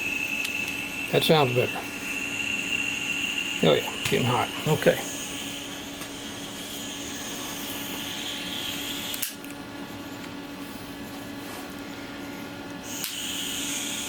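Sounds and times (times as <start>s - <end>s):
soldering iron gas hissing: 0.0s - 9.4s, 12.8s - 14.0s.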